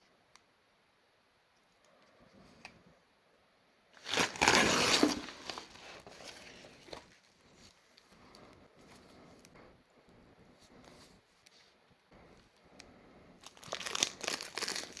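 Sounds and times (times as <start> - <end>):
packaging crinkling and tearing: 4.0 - 7.3, 13.4 - 15.0.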